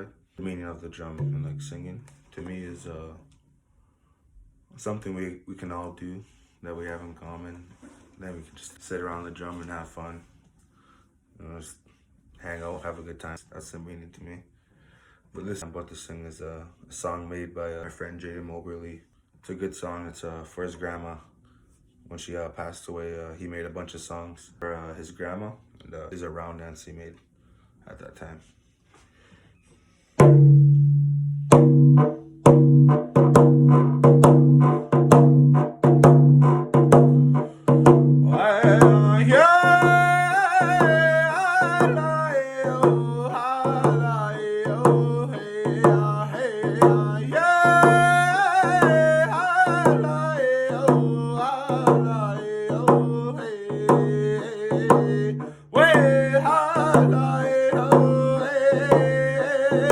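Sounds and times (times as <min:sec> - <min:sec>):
hand drum beat: 0:01.2 - 0:02.0, 0:30.2 - 0:59.9
young man singing: 0:37.6 - 0:59.9.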